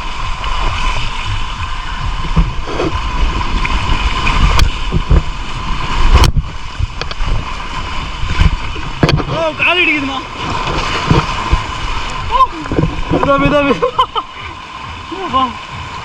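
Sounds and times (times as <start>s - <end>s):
rushing water: 0.0s - 16.0s
wind buffeting microphone: 0.7s - 15.0s
sharp knocks of boat ride: 4.4s - 5.4s, 8.3s - 9.5s, 10.4s - 11.7s, 12.6s - 13.9s.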